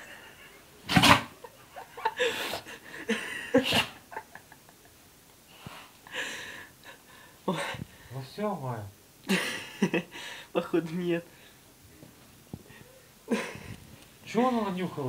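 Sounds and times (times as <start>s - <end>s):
dog sneezing: 0.8s - 1.4s, 3.6s - 4.0s
person speaking: 10.5s - 11.3s, 14.2s - 15.0s.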